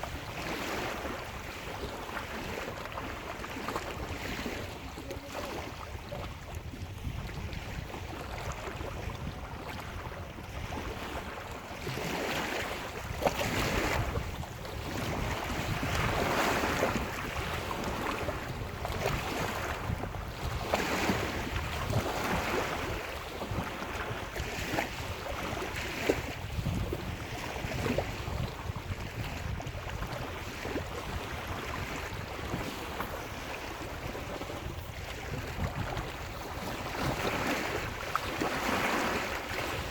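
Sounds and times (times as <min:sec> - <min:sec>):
wind rumbling on microphone: 0:00.0 - 0:39.9
surf breaking on shore: 0:10.7 - 0:39.9.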